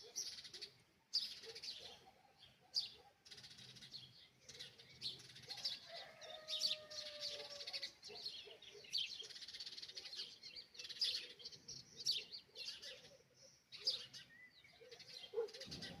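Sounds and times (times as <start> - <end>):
songbirds chirping: 0.0 - 16.0.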